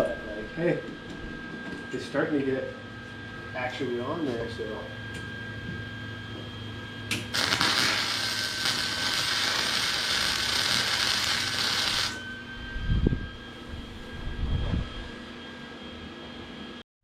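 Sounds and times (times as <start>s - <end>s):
welding arc crackling: 7.1s - 12.2s.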